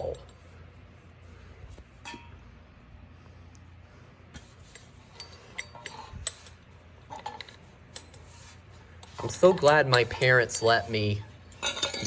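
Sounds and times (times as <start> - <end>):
small hard parts clinking: 9.0 - 12.0.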